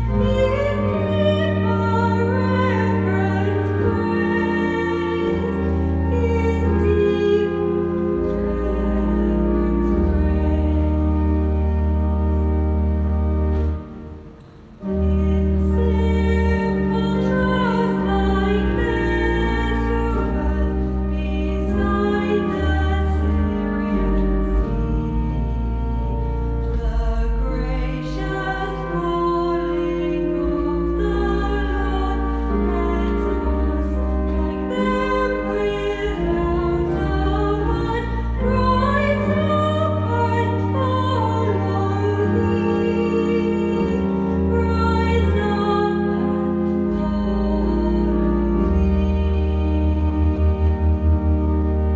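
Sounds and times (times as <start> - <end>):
pipe organ bass notes: 0.0 - 51.9
choir singing a hymn: 14.8 - 26.0, 27.1 - 50.8.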